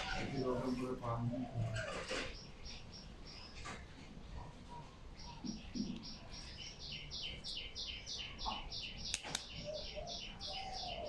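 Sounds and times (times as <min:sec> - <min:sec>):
sharp clicks: 0:09.1 - 0:09.6.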